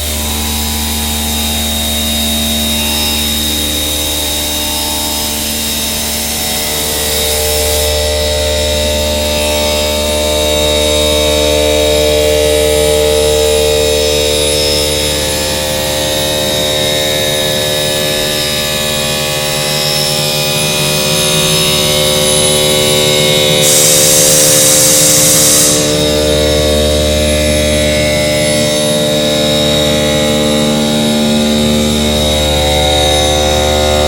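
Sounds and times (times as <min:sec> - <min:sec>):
grinding spindle whine: 0:00.0 - 0:34.0
loud hiss: 0:23.6 - 0:26.3.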